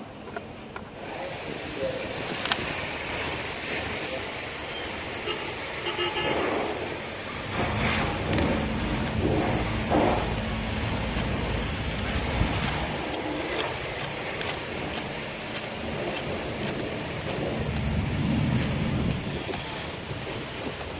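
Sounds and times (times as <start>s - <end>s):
car engine running: 7.4s - 13.1s.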